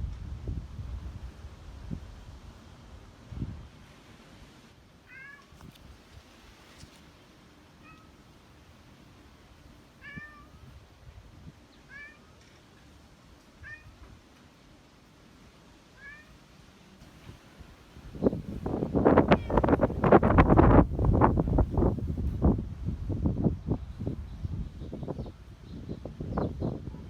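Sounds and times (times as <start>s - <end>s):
cat meowing faintly: 5.1s - 5.6s, 7.8s - 8.2s, 10.0s - 10.7s, 11.9s - 12.4s, 13.6s - 14.1s, 16.0s - 16.4s, 19.4s - 19.8s.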